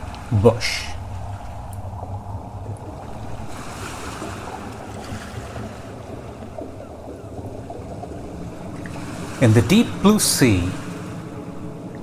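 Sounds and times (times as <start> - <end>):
ocean waves washing in: 0.0 - 12.0.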